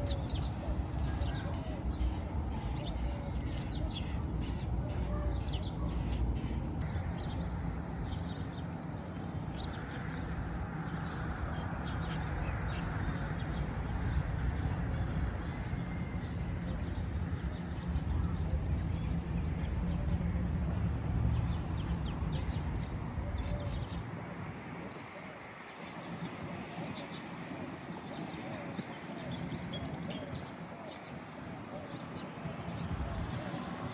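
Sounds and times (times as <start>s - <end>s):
steady low rumble: 0.0s - 25.3s, 32.2s - 33.9s
small birds chirping: 0.0s - 33.9s.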